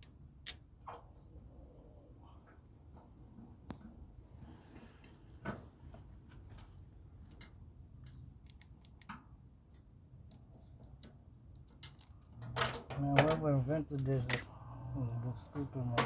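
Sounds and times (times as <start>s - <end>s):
clicks and taps of metal parts: 7.3s - 14.5s.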